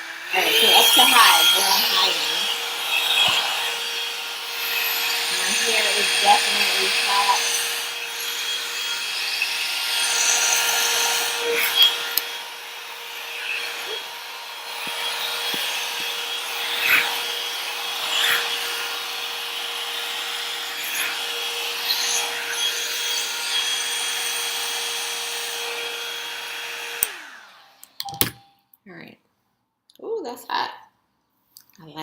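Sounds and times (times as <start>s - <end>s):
hair dryer brush whining: 0.0s - 28.4s
brush scraping through hair: 0.4s - 3.8s, 5.3s - 7.5s.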